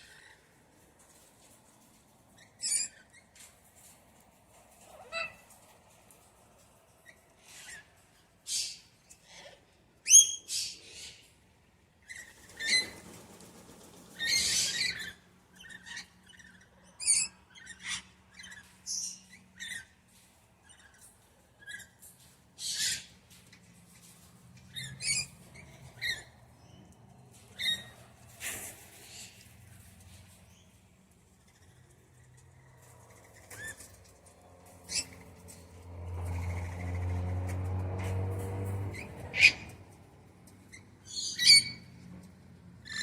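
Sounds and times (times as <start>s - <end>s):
parrots chirping and squawking: 1.6s - 3.9s, 4.8s - 6.2s, 7.0s - 11.3s, 12.0s - 13.2s, 14.2s - 30.6s, 31.4s - 37.2s, 38.9s - 39.9s, 40.7s - 41.9s.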